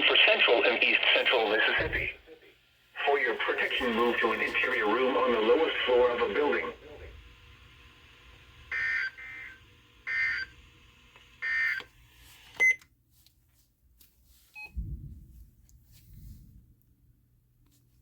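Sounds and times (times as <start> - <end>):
low thump: 1.8 - 2.2, 14.8 - 16.6
radio click: 3.0 - 6.8.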